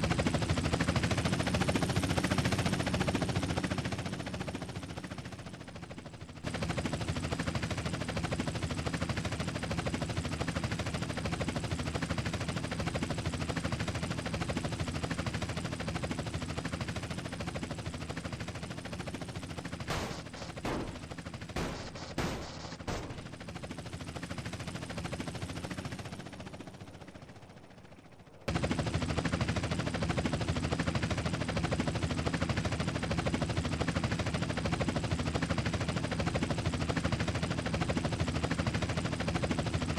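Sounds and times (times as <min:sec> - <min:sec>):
helicopter running: 0:00.0 - 0:39.9
gunshots: 0:19.9 - 0:23.4.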